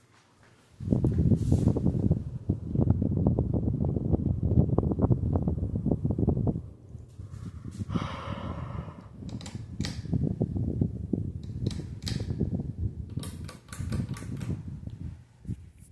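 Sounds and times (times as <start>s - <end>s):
ceiling fan rumbling: 0.0s - 15.9s
sharp clicks: 9.2s - 10.1s, 11.4s - 12.4s, 13.1s - 14.6s.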